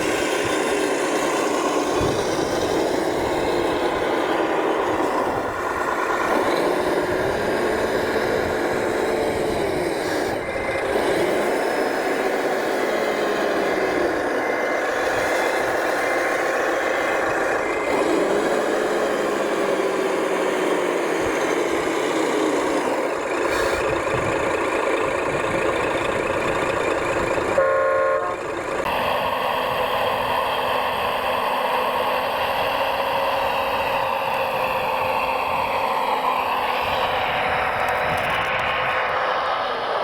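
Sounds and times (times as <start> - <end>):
model truck engine sound: 0.0 - 40.0
short horn toot: 27.6 - 28.4.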